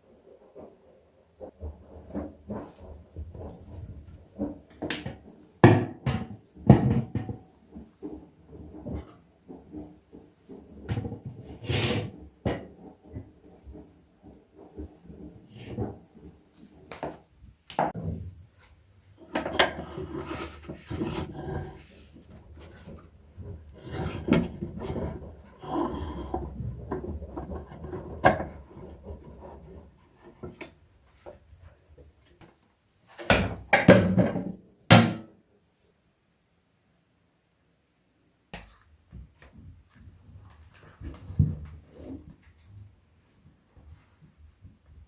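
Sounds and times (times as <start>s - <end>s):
rubbing and scraping: 7.4s - 31.5s.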